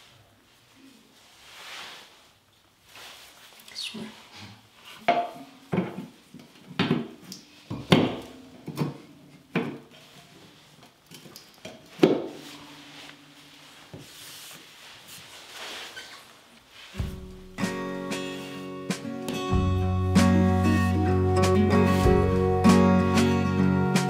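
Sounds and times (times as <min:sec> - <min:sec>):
rubbing and shuffling: 0:00.0 - 0:05.0, 0:12.3 - 0:24.0.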